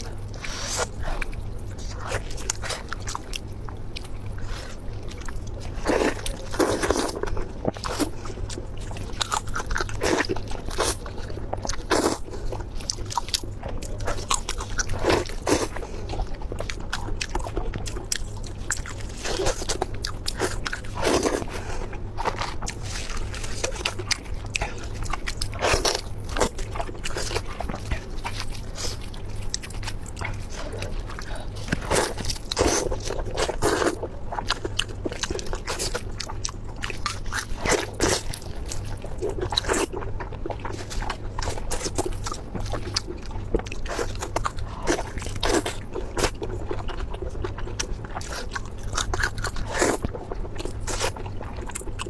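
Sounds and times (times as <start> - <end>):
person chewing food: 0.0 - 52.0
steady low hum: 0.0 - 52.0.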